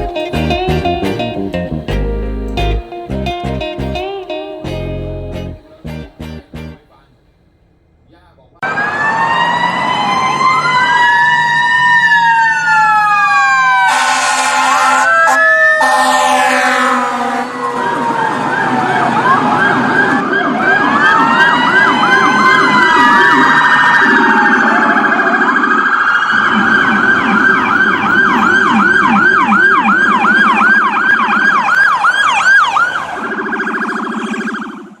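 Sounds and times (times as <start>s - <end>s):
emergency vehicle siren yelping: 8.6s - 35.0s.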